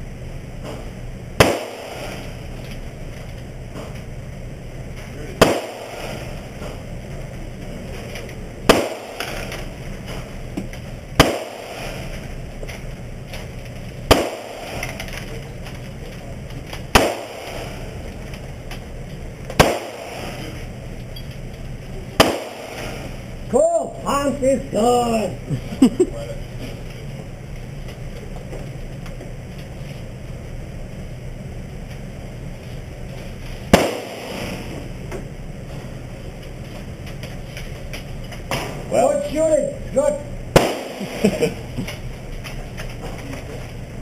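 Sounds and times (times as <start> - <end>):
steady background hum: 0.0 - 44.0
pistol shots with echo: 1.4 - 2.3, 5.4 - 6.4, 8.7 - 9.6, 11.2 - 12.0, 14.1 - 15.0, 16.9 - 17.9, 19.6 - 20.6, 22.2 - 23.2, 33.7 - 34.9, 40.6 - 41.2.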